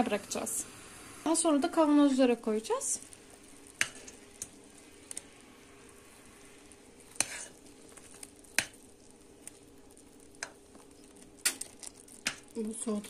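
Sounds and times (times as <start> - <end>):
steady low hum: 0.0 - 13.0
syrup bubbling and sizzling: 0.0 - 13.0.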